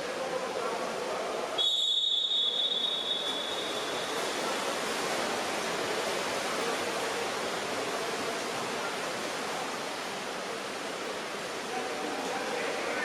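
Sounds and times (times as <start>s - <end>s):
echoing water splashing: 0.0s - 13.0s.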